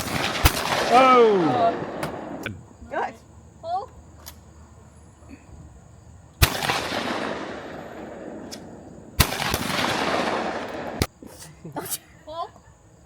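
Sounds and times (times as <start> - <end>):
shotgun shots with echo: 0.0 - 2.4, 6.4 - 11.1.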